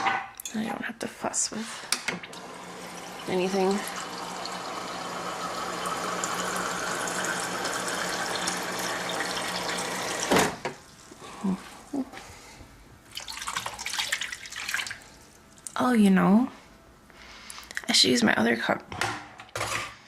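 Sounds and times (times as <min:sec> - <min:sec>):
water pouring into a cup: 0:02.3 - 0:10.3, 0:13.1 - 0:15.2.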